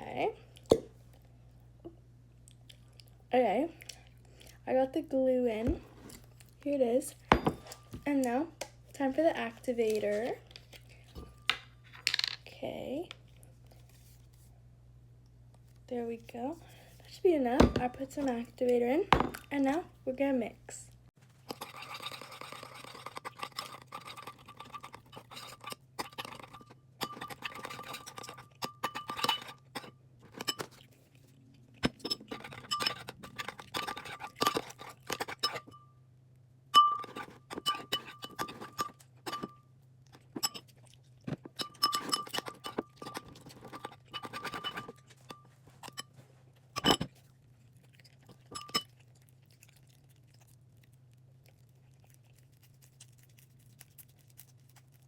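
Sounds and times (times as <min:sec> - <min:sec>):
utensil scraping a bowl: 0:21.5 - 0:30.8, 0:31.8 - 0:35.8, 0:36.8 - 0:39.6, 0:41.4 - 0:46.2.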